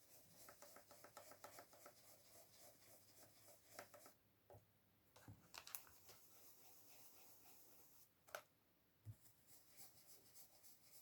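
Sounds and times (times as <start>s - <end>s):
brush dabbing on card: 0.0s - 4.1s.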